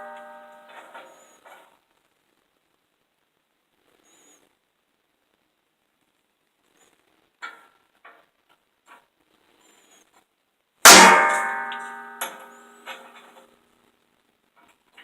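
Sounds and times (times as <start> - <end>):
hammer strike on metal stamp: 10.9 - 13.0.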